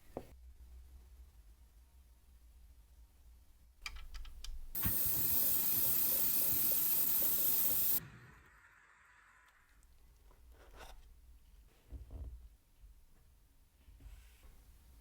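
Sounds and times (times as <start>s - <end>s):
spray nozzle hissing: 4.8s - 8.0s.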